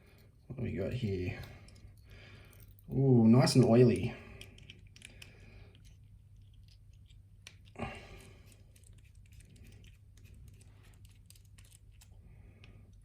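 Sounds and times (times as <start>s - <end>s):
small metal parts clicking: 4.3s - 7.8s, 8.4s - 13.0s.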